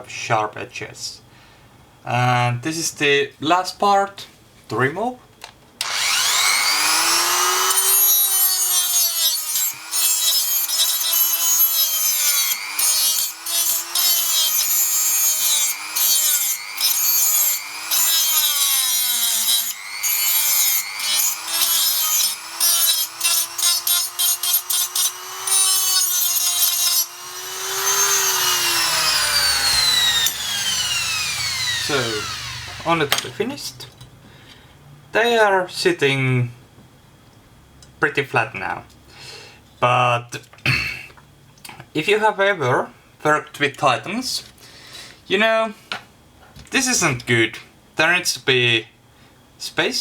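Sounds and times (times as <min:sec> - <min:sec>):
rotary tool grinding metal: 0:05.8 - 0:33.1.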